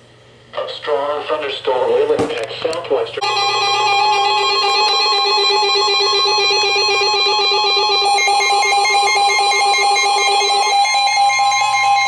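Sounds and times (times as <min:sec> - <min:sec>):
steady electronic alert tone: 0:03.2 - 0:12.0.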